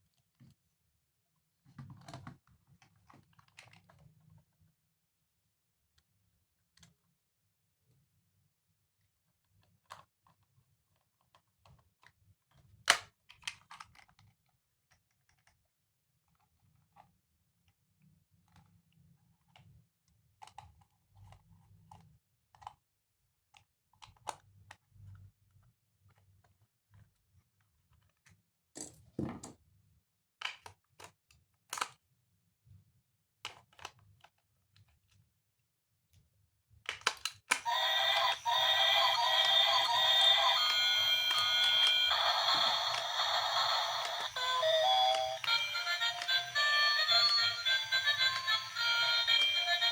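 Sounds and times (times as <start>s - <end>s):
toy and packaging clicks and knocks: 11.2s - 15.6s, 30.4s - 32.0s, 33.5s - 35.2s, 36.8s - 49.9s
music: 37.7s - 49.9s.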